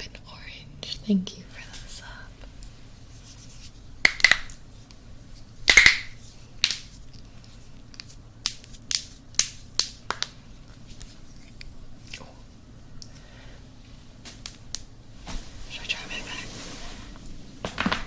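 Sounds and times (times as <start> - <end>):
knuckles cracking: 4.0 - 4.6, 5.7 - 12.2.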